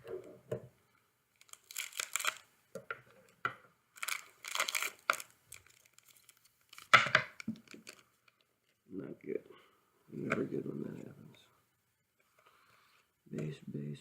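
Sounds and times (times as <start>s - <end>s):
card pack wrapper tearing: 1.4s - 2.4s, 4.0s - 8.0s
wrapper crackles: 1.4s - 2.4s, 4.0s - 8.8s.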